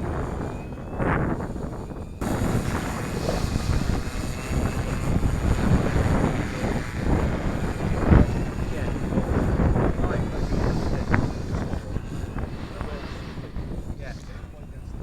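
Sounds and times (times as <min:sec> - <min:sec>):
drone motors whining: 0:00.0 - 0:15.0
wind buffeting microphone: 0:00.0 - 0:15.0.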